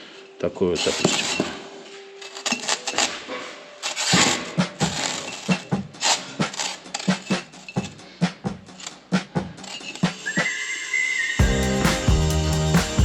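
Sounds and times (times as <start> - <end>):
music with percussive beat: 11.4 - 13.0.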